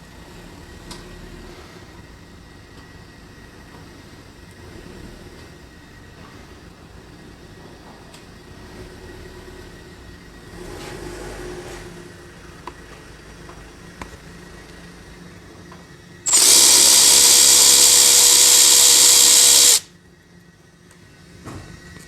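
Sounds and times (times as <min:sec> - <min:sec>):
power tool whining: 0:16.3 - 0:19.9.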